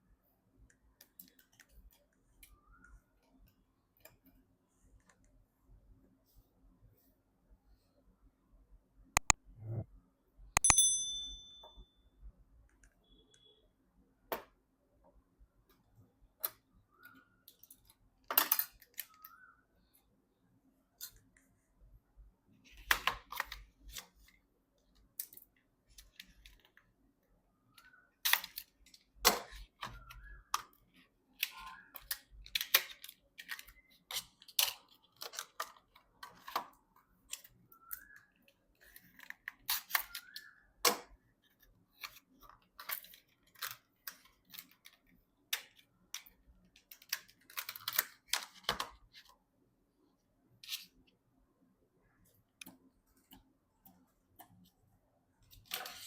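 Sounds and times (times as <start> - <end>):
sharp clicks and taps: 9.2 - 9.8, 10.6 - 10.9.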